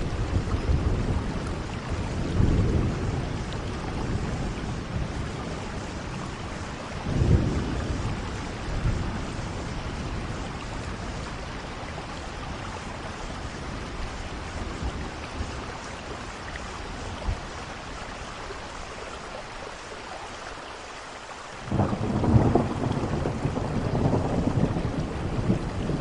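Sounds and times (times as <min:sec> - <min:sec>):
thunder rumbling: 0:00.0 - 0:16.2, 0:21.6 - 0:26.0
steady rain falling: 0:00.0 - 0:26.0.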